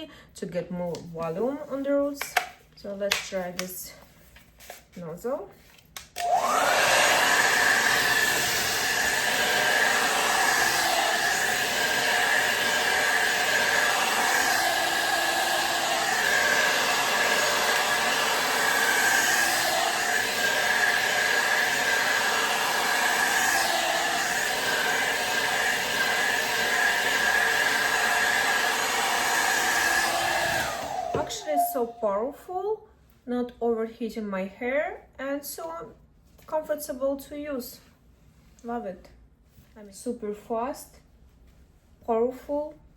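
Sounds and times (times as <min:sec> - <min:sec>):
hair dryer blowing air: 0:06.2 - 0:32.1.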